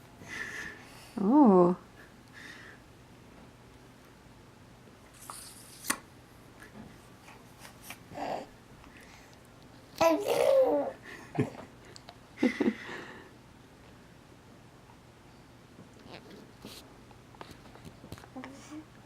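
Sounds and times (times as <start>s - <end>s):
baby babbling and cooing: 8.1s - 8.6s, 10.0s - 11.0s.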